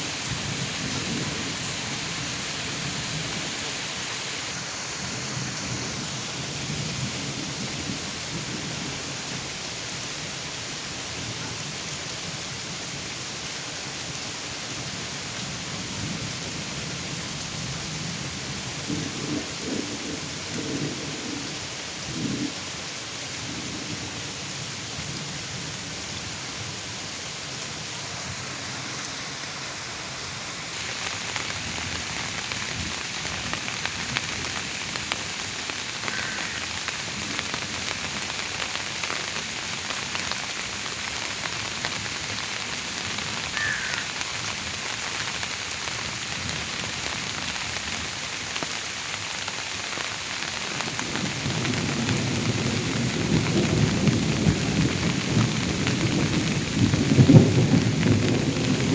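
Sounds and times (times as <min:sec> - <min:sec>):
rain falling: 0:00.0 - 0:58.9
thunder rumbling: 0:18.9 - 0:21.5, 0:50.7 - 0:58.9.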